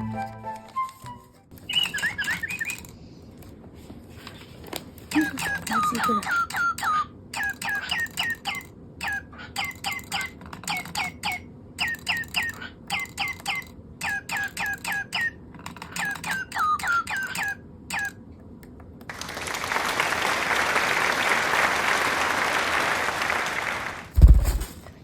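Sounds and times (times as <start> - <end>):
toy bird chirping: 1.6 - 2.9, 5.1 - 18.2
rushing rustling noise: 24.2 - 24.8
short thump: 24.2 - 24.8.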